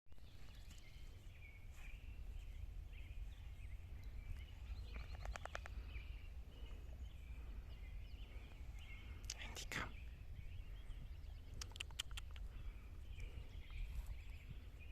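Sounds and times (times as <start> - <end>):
birds chirping: 0.1 - 14.9
steady low rumble: 0.2 - 14.9
quick clicks: 11.5 - 12.4.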